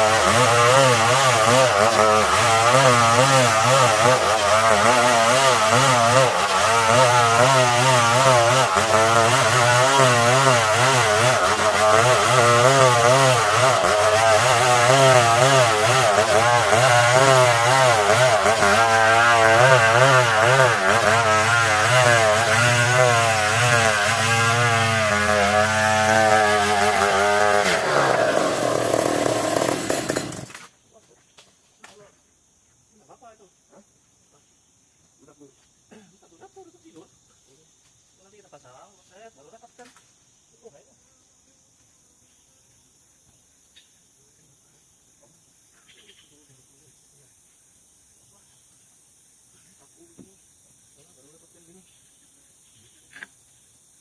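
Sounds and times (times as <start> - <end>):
chainsaw cutting wood: 0.0 - 30.7.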